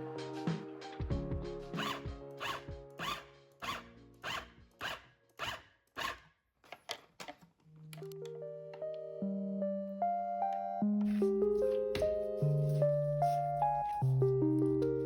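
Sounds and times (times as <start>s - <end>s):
background music: 0.0s - 5.0s, 8.0s - 15.0s.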